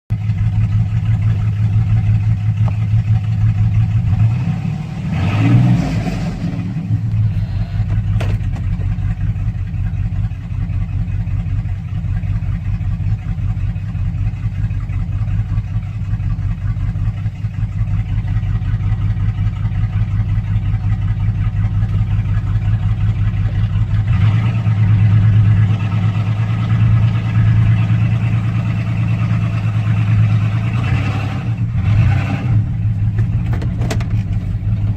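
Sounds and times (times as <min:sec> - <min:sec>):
engine idling rough: 0:00.1 - 0:34.9
engine revving: 0:01.0 - 0:08.6, 0:18.2 - 0:34.9.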